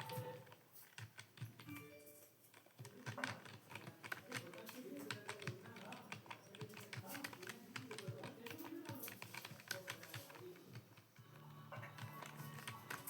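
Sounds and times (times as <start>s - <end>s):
keyboard typing: 0.0s - 13.0s.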